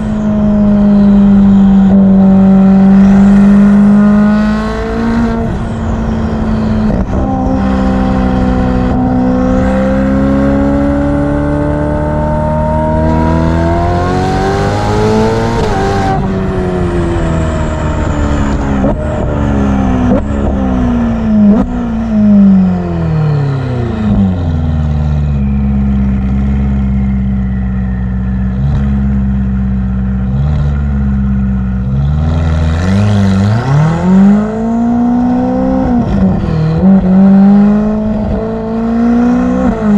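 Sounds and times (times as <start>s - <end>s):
car engine revving: 0.0s - 39.9s.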